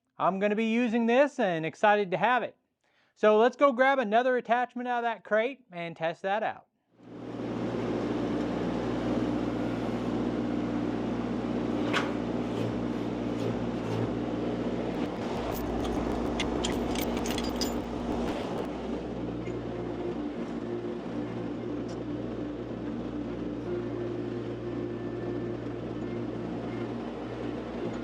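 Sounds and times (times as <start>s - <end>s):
skid steer engine running: 7.1s - 28.0s
sharp metallic clanks: 15.0s - 18.7s.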